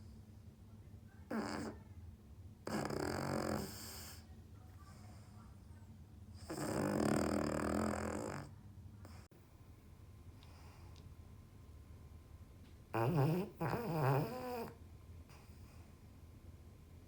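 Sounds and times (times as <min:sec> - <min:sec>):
dog snoring: 0:01.3 - 0:01.8, 0:02.6 - 0:04.2, 0:06.4 - 0:09.3, 0:12.9 - 0:15.9.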